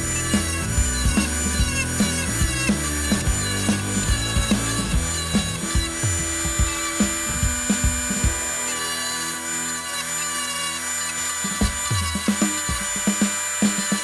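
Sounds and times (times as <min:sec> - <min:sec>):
kick-drum beat: 0:00.0 - 0:08.5.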